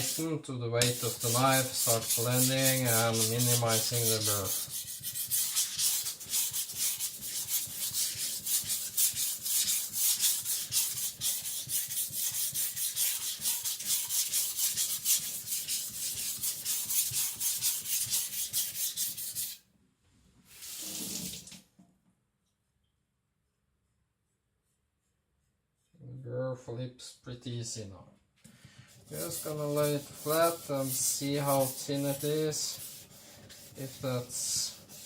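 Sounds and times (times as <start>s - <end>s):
cleaver stroked on whetstone: 0.0s - 19.6s, 28.9s - 35.0s.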